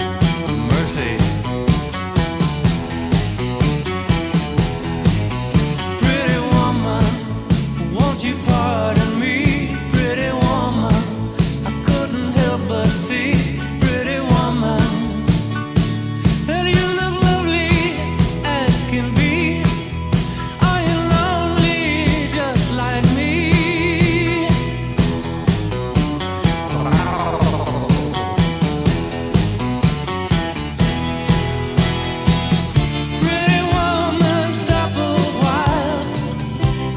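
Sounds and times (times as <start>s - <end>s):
guitar: 0.0s - 36.9s
rock music: 0.0s - 36.9s
steady drumbeat: 25.0s - 30.0s.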